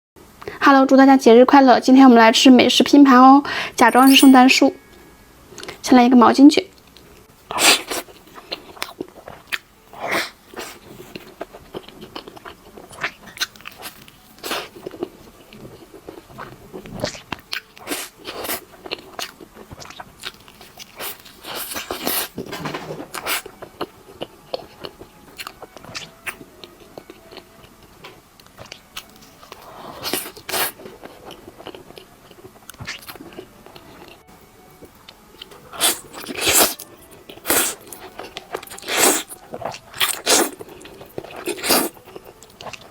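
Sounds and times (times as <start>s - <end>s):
person chewing crunchy food: 7.5s - 22.5s, 23.1s - 27.8s, 28.5s - 42.9s.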